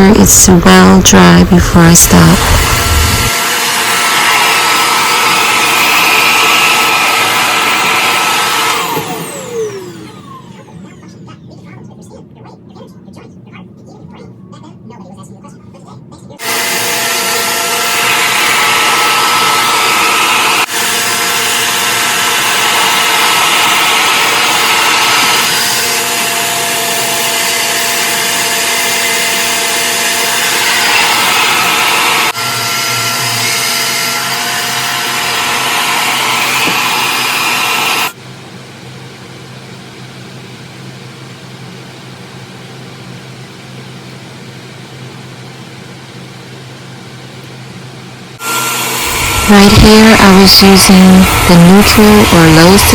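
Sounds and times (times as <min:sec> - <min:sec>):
hair dryer running: 0:00.0 - 0:10.8, 0:16.4 - 0:38.2, 0:48.4 - 0:52.9.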